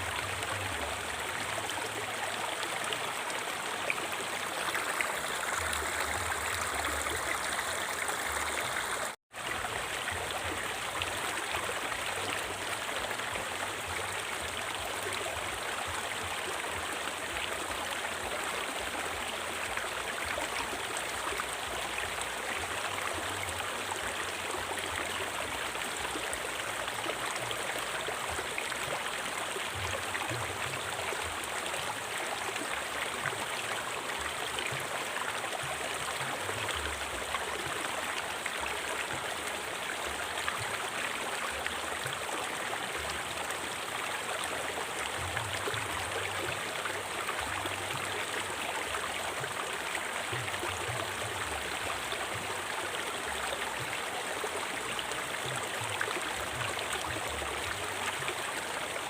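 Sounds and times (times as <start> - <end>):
river water flowing: 0.0 - 59.0.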